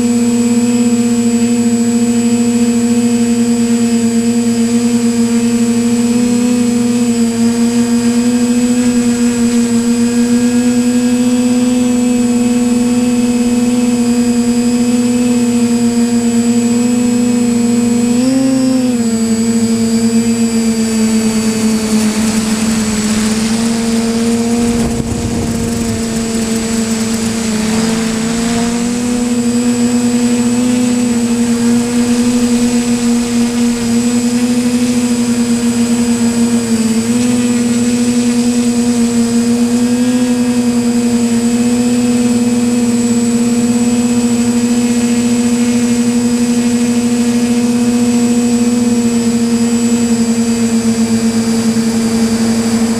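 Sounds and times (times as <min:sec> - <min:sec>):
drone propellers buzzing: 0:00.0 - 0:52.9
wind noise: 0:20.8 - 0:34.4.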